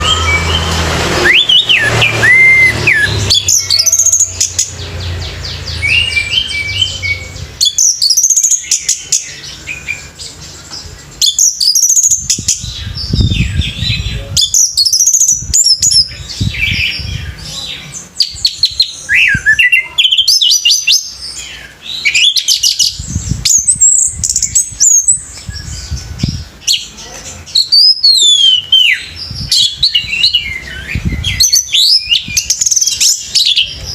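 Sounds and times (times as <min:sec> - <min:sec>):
thrush singing: 0:00.0 - 0:11.2.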